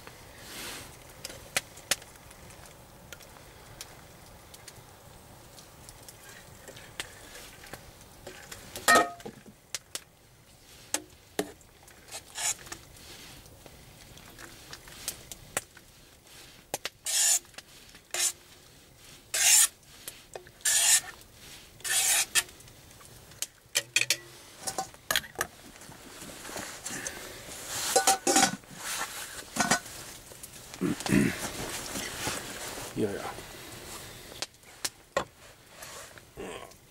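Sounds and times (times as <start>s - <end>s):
spoon scraping in metal pot: 12.1s - 12.7s, 17.1s - 17.4s, 18.1s - 18.4s, 19.4s - 19.7s, 20.6s - 21.1s, 21.8s - 22.5s.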